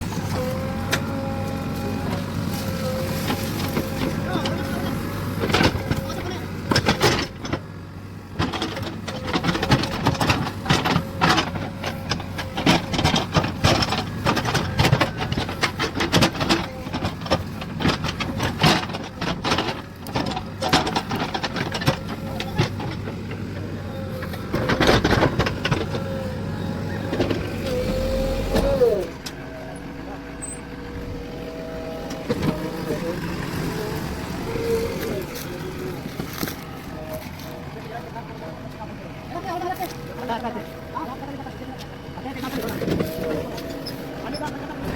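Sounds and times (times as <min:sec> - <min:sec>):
backhoe engine and hydraulics whine: 0:00.0 - 0:44.9
knocks and clatter: 0:02.1 - 0:29.4.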